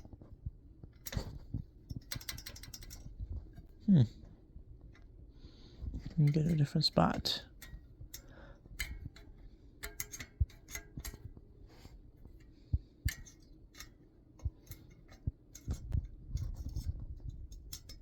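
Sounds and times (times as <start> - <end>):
metal spoke clicking: 2.0 - 3.1, 7.5 - 11.3, 17.5 - 18.0.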